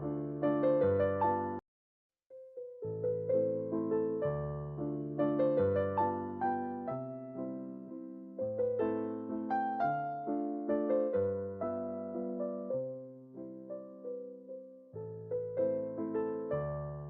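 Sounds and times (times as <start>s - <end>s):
gentle solo piano melody: 0.0s - 1.6s, 2.3s - 17.0s.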